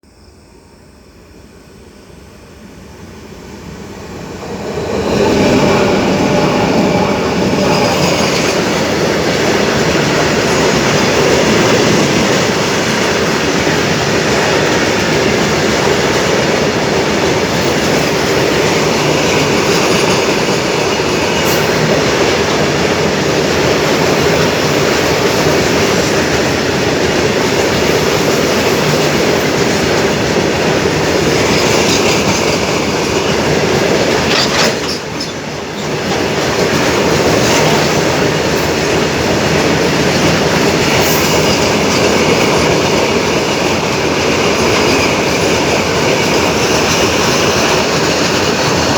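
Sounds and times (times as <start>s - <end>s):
train wheels on track: 0.1s - 48.9s.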